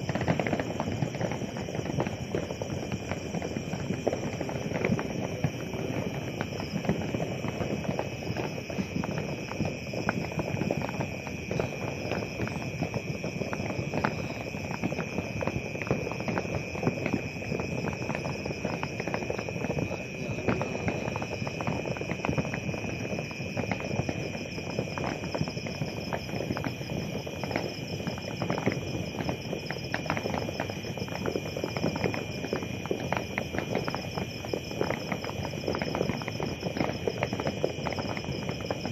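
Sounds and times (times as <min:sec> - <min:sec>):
crickets chirring: 0:00.0 - 0:38.9
firecrackers popping and crackling: 0:00.0 - 0:38.9.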